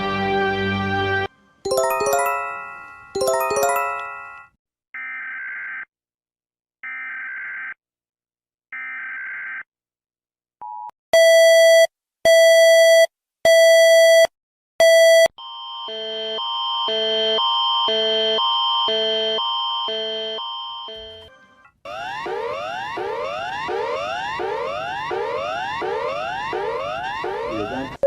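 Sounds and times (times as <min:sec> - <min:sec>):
descending electronic chime: 0:01.7 - 0:04.4
harsh multi-tone alert signal: 0:01.7 - 0:04.5, 0:15.9 - 0:28.0.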